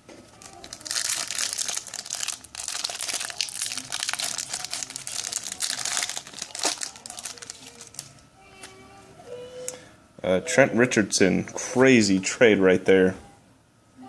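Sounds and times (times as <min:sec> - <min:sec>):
card pack wrapper crinkling: 0:00.4 - 0:08.2.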